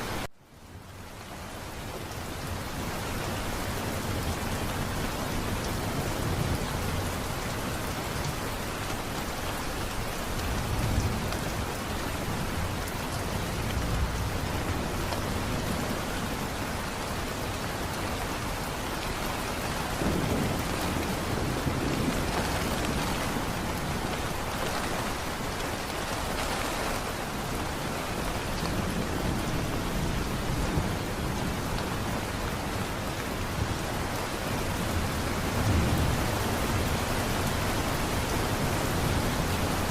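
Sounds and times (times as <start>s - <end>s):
heavy rain falling: 0.0s - 39.9s
thunder rumbling: 18.1s - 32.8s.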